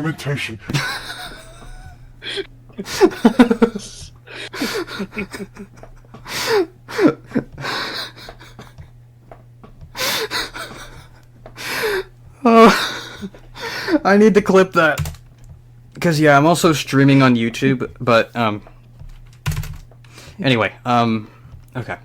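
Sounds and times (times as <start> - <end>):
man laughing hard: 0.7 - 8.9, 9.8 - 14.6
man gasping for breath: 1.4 - 8.9, 9.9 - 14.0.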